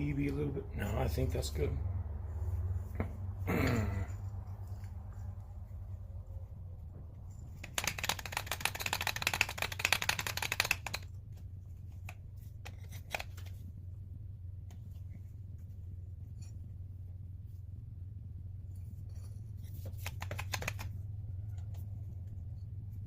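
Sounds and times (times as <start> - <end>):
steady low hum: 0.0 - 23.0
rapid clicks: 7.4 - 13.7, 19.6 - 21.0.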